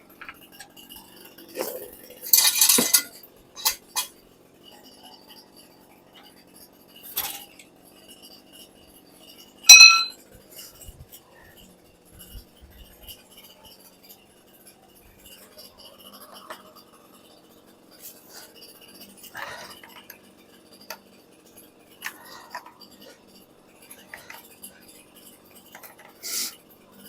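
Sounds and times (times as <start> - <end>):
metal clinks and handling: 2.3 - 3.8, 9.7 - 10.1.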